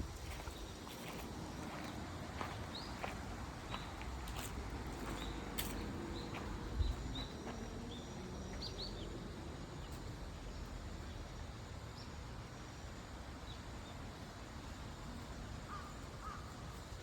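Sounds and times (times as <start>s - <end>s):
small birds chirping: 0.2s - 9.2s.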